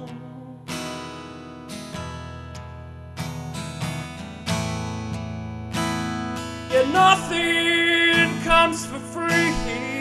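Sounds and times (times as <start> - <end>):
person singing slow ballad: 0.0 - 1.4, 6.4 - 10.0
acoustic guitar strumming: 0.0 - 10.0.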